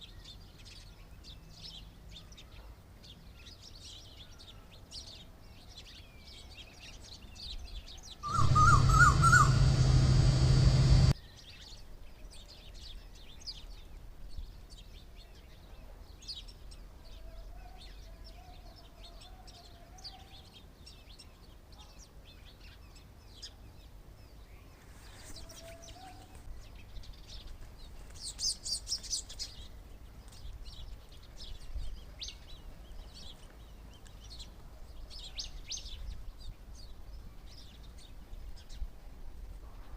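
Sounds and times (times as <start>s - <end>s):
small birds chirping: 0.0s - 39.0s
short wavering call: 8.2s - 11.1s
loud noisy burst: 8.2s - 11.2s.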